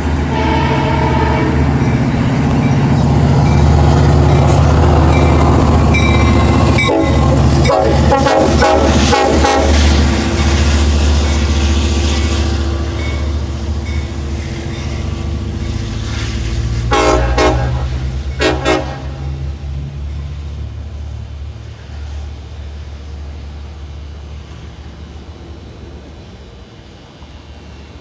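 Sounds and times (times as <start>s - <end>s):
diesel train rumbling: 0.0s - 28.0s
short train horn toots: 0.3s - 1.7s, 6.8s - 10.0s, 16.9s - 19.4s.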